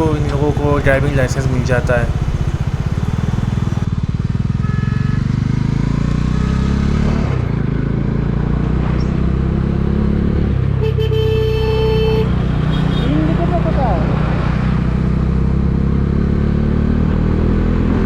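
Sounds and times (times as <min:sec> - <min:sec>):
motorcycle engine running: 0:00.0 - 0:18.0
vehicle horn: 0:04.4 - 0:05.7, 0:10.7 - 0:13.5.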